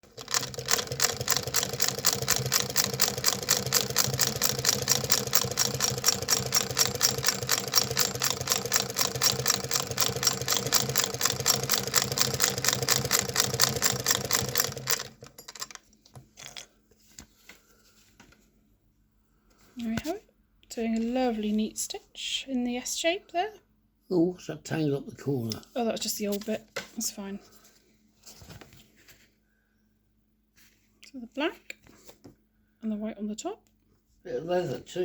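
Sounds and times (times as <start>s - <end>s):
sewing machine clattering: 0.0s - 15.8s.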